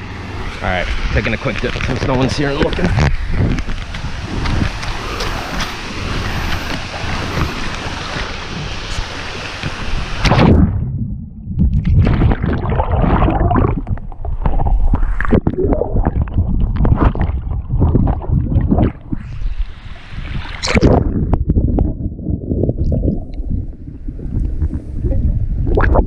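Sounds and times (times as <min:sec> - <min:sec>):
water splashing and gurgling: 0:00.0 - 0:26.0
waterfall rushing: 0:03.8 - 0:10.3.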